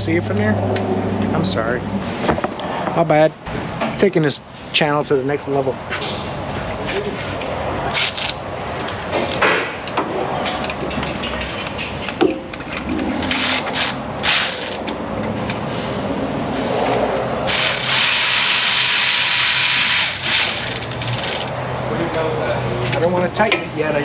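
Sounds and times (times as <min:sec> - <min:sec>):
handheld power tool running: 0:13.2 - 0:14.9, 0:17.5 - 0:21.5
metal tools clicking and clanking: 0:17.5 - 0:21.6.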